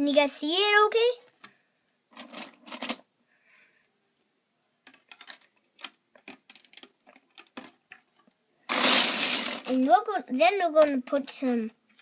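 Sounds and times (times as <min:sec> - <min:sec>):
plastic bricks clicking together: 0:04.8 - 0:08.0.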